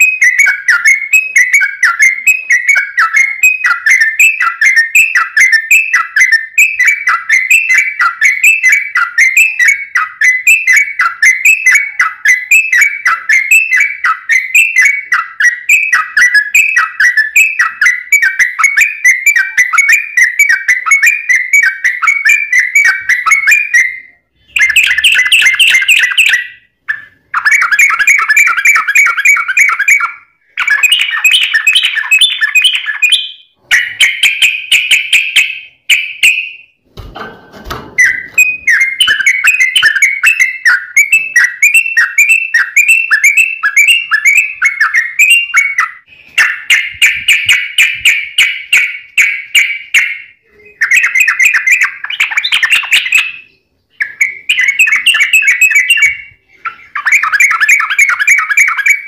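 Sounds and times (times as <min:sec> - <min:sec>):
bulbul singing: 0:00.0 - 0:59.0.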